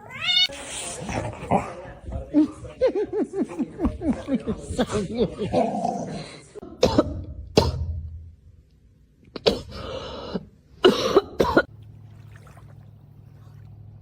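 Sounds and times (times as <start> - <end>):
person coughing: 6.7 - 8.0, 9.4 - 9.9, 10.8 - 11.7.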